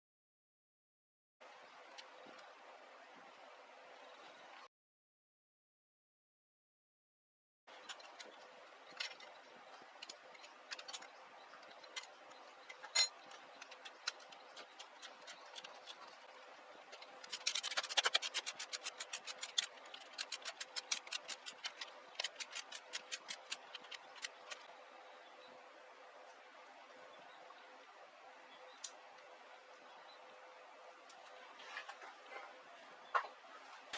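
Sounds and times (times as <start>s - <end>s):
faint steady hum: 1.4s - 4.7s, 7.7s - 33.9s
rapid ratchet clicking: 17.2s - 24.6s.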